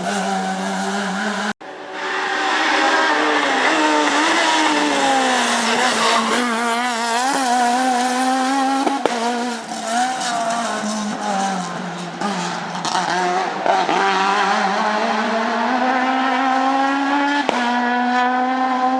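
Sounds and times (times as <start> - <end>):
rally car engine revving: 0.0 - 18.9
sharp crack: 7.2 - 11.1, 17.4 - 18.2.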